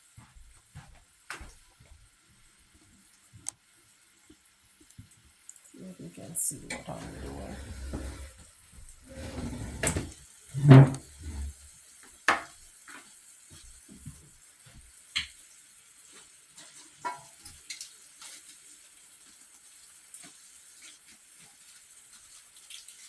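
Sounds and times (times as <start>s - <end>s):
meat sizzling in a pot: 10.2s - 23.0s.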